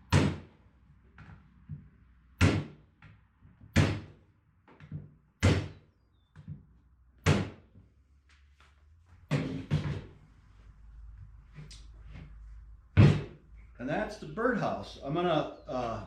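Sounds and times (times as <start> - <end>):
hammer driving nails into wood: 2.4 - 2.8, 3.7 - 4.2, 7.2 - 7.7.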